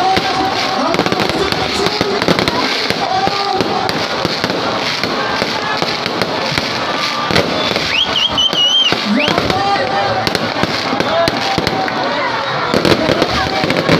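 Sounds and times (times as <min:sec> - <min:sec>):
fireworks crackling and banging: 0:00.0 - 0:13.9
firework whistle: 0:03.6 - 0:09.7.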